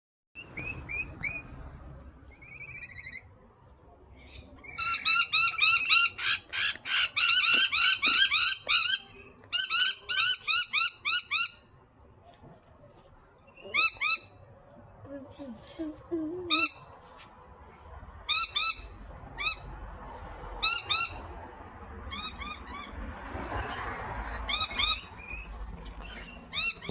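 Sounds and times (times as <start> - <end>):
parrot squawking: 0.4 - 1.5, 4.3 - 11.6, 13.5 - 14.3, 16.4 - 16.9, 18.3 - 19.7, 20.6 - 21.4, 22.1 - 23.0, 23.6 - 26.9.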